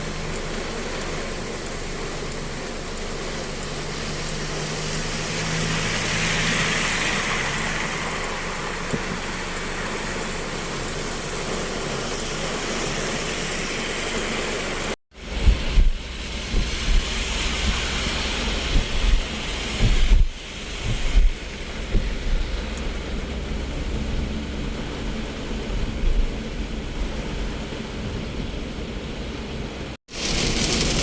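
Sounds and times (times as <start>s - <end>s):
steady rain hiss: 0.0s - 31.0s
wind gusts on microphone: 14.8s - 31.0s.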